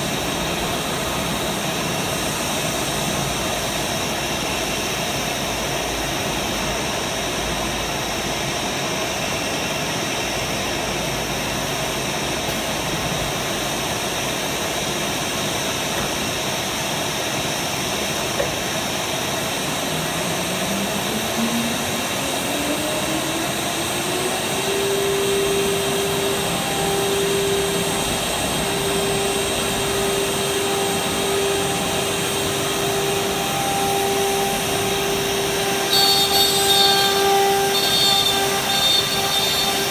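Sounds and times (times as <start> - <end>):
spindle whine rising: 0.0 - 39.9
router machine rushing noise: 15.2 - 39.9.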